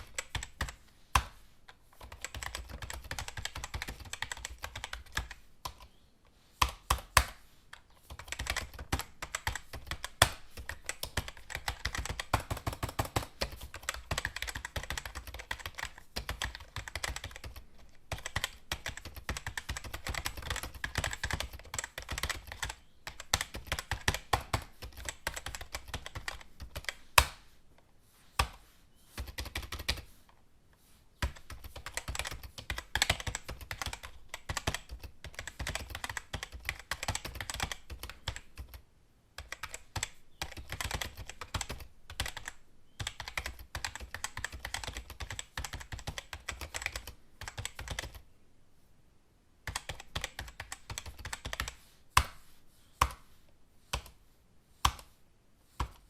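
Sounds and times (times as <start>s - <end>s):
computer keyboard typing: 0.0s - 1.4s, 2.0s - 5.9s, 6.6s - 27.4s, 29.2s - 30.1s, 31.2s - 38.8s, 39.4s - 48.2s, 49.7s - 52.3s.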